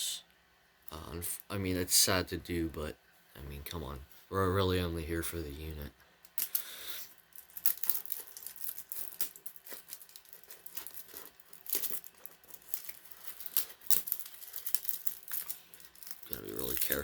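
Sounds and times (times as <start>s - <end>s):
plastic wrapping crinkling and tearing: 6.4s - 17.0s.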